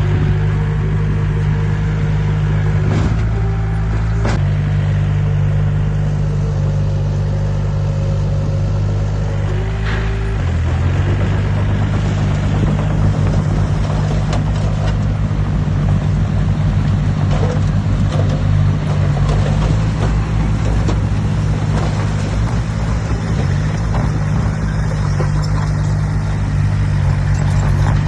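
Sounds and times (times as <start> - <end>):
heavy diesel engine running: 0.0 - 28.0
clanks and knocks: 16.8 - 26.4.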